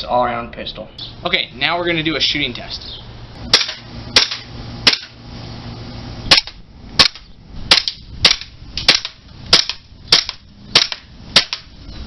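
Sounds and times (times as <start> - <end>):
airsoft pistol shots: 3.5 - 5.2, 6.3 - 11.7.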